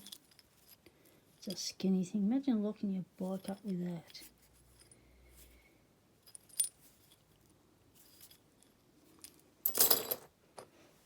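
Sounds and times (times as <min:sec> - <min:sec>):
chain links rattling: 0:00.0 - 0:01.7, 0:08.0 - 0:10.3.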